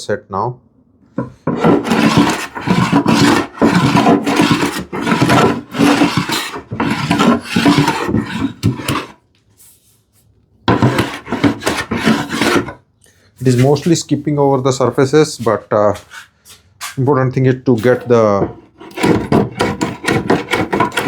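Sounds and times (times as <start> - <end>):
hand plane rasping on wood: 1.5 - 9.2, 10.7 - 12.8, 18.5 - 21.0.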